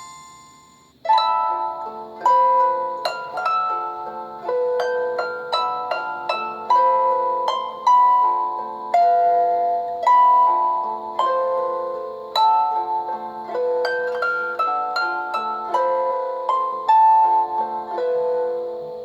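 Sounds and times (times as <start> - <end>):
phone ringtone melody: 0.0 - 0.9.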